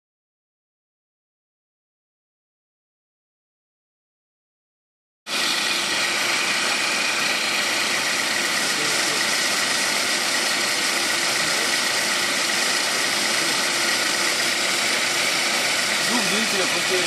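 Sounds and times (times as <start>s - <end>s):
car engine idling: 5.9s - 17.0s.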